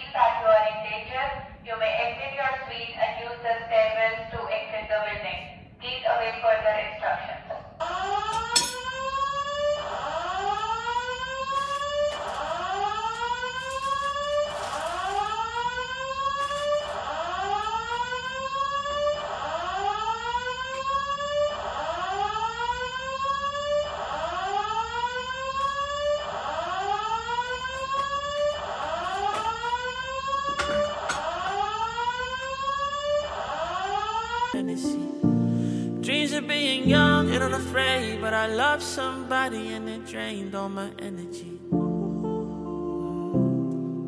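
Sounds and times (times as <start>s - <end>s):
fire alarm whooping: 7.8s - 34.6s.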